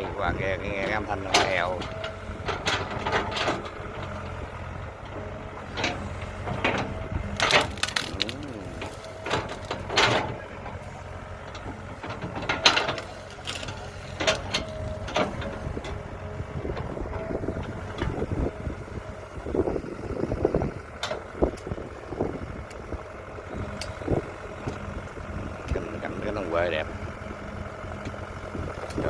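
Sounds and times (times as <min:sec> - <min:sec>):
excavator diesel engine running: 0:00.0 - 0:29.0
bucket digging earth: 0:06.6 - 0:10.8.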